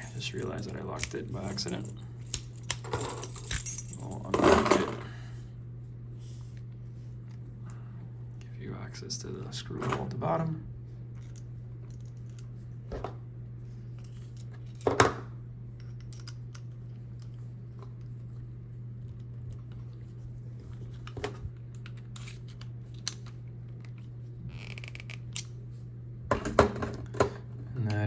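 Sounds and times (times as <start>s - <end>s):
low hum: 0.0s - 28.0s.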